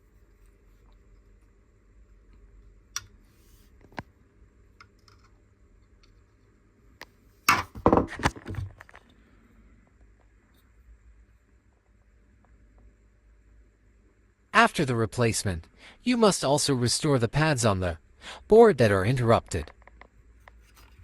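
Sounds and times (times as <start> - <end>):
tools clattering on workbench: 7.5 - 8.7.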